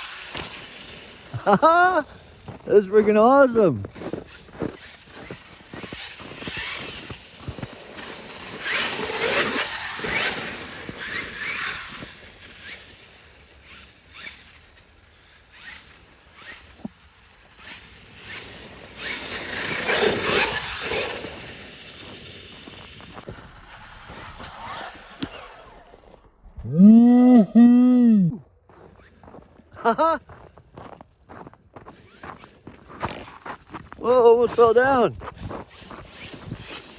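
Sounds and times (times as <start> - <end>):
tyres crunching on ice and snow: 0.2 - 14.6, 17.5 - 25.7, 28.7 - 36.9.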